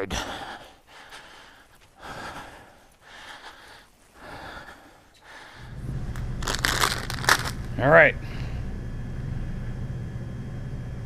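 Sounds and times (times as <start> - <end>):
man breathing heavily: 0.0 - 6.0, 8.2 - 8.7.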